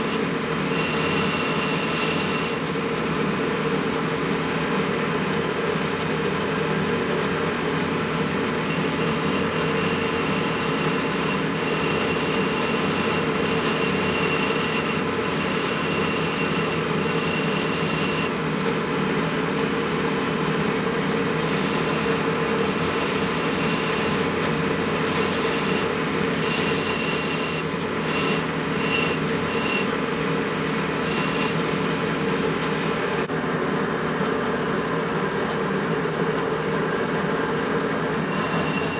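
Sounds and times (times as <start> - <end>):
power tool abrading: 0.0 - 4.2, 7.6 - 33.3, 38.1 - 38.9.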